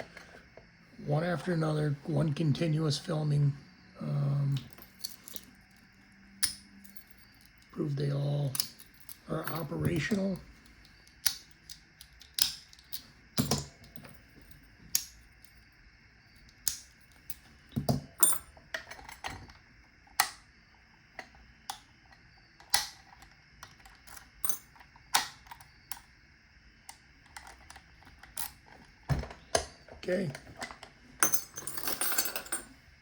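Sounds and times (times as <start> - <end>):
padlock keys clicking: 4.5 - 7.8, 8.6 - 14.1, 16.4 - 19.4
padlock shackles snapping: 6.4 - 7.8, 8.5 - 14.0, 16.4 - 18.4, 22.6 - 26.0.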